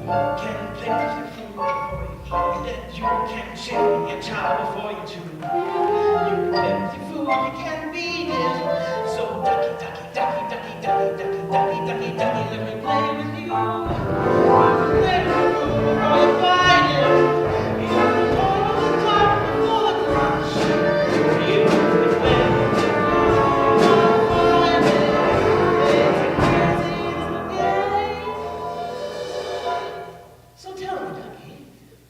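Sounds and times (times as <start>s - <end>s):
instrumental accompaniment: 0.0s - 30.6s
voices singing held notes: 8.2s - 30.5s.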